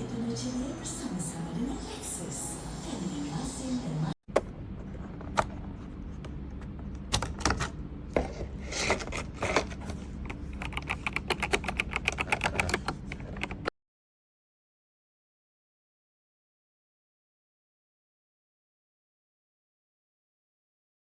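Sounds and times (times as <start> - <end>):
mechanical keyboard typing: 10.3 - 13.7.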